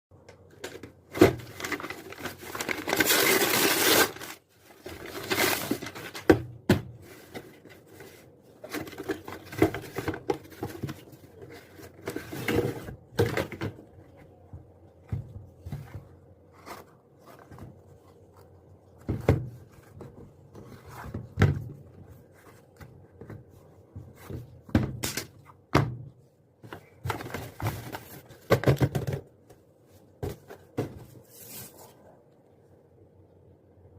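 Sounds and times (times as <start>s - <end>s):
packaging rustling: 0.6s - 6.3s.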